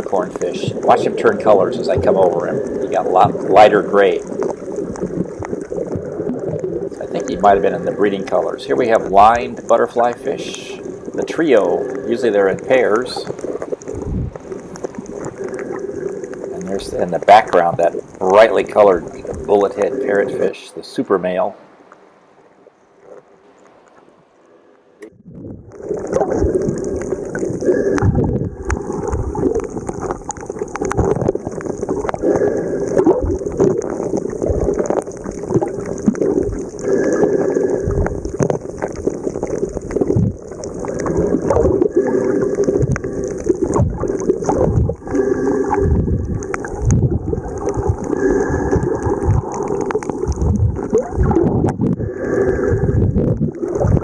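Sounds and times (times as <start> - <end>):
steady hiss: 0.0 - 22.4
water sloshing and bubbling: 0.0 - 54.0.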